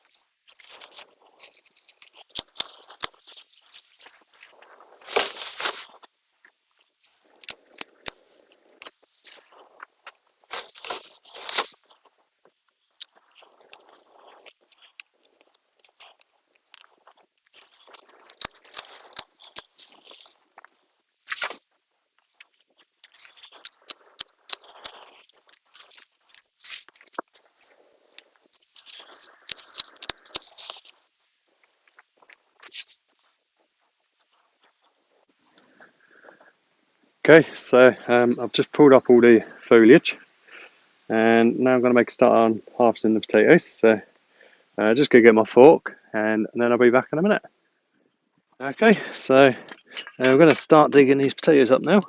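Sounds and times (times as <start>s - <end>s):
rustling leaves: 0.0s - 6.1s, 6.9s - 35.3s
stems crunching and snapping: 0.0s - 35.2s.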